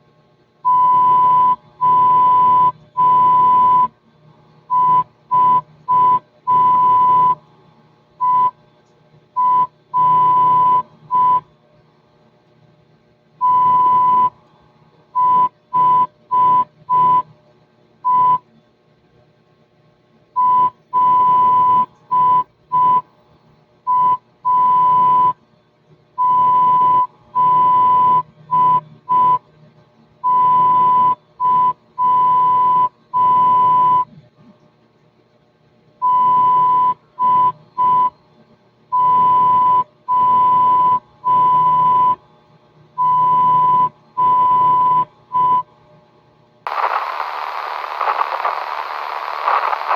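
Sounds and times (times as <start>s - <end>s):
morse code beeps: 20.4s - 23.0s, 26.2s - 29.4s, 39.0s - 42.2s, 43.0s - 45.6s.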